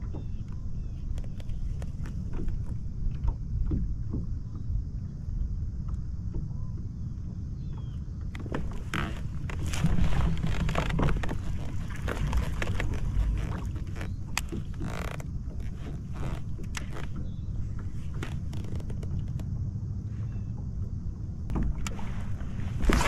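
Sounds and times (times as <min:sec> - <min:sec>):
kayak creaking: 0:00.0 - 0:06.8, 0:07.6 - 0:23.0
steady low rumble: 0:00.0 - 0:23.0
scraping: 0:08.4 - 0:19.4.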